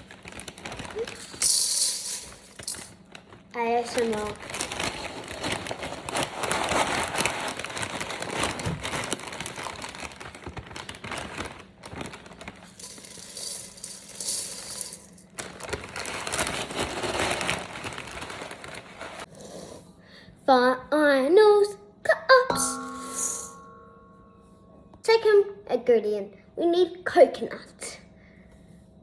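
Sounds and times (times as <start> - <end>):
puffed rice poured into bowl: 12.6 - 15.2.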